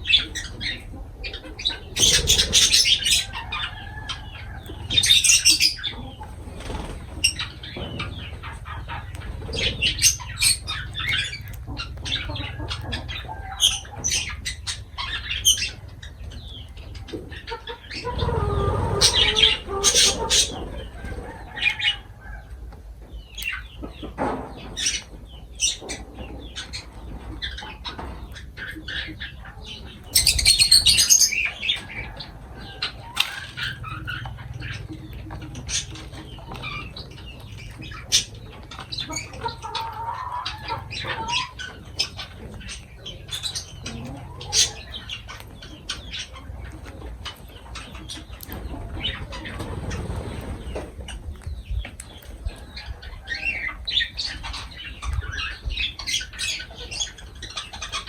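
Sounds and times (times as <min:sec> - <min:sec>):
lovebirds chirping and squawking: 0:00.0 - 0:58.0
wing flapping: 0:01.8 - 0:03.3, 0:04.8 - 0:11.5.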